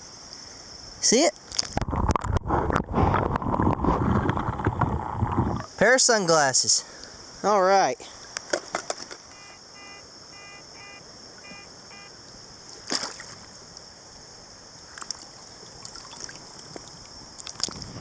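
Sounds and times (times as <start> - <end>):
river water splashing and trickling: 1.2 - 18.0
metal detector beeps: 9.3 - 12.1
sharp splash or knock: 12.8 - 13.4.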